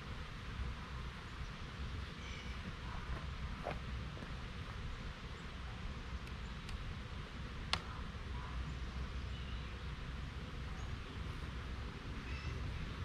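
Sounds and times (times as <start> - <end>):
low rumble and hiss: 0.0 - 13.0.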